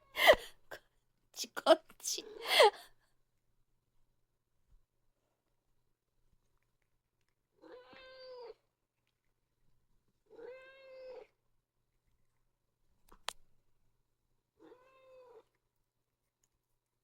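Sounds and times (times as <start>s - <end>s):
cat meowing: 7.6s - 8.6s, 10.3s - 11.3s, 14.6s - 15.5s.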